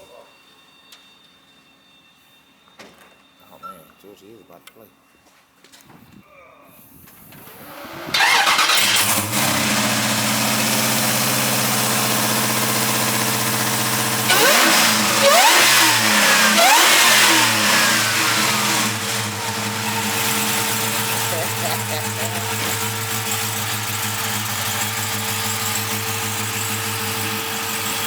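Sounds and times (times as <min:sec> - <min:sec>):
car engine starting and idling: 0:07.4 - 0:28.0
car engine revving: 0:07.6 - 0:28.0.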